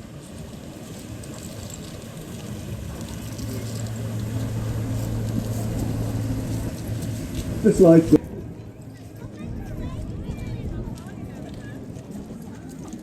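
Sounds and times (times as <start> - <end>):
low engine hum: 0.0 - 13.0
outdoor background noise: 0.0 - 13.0.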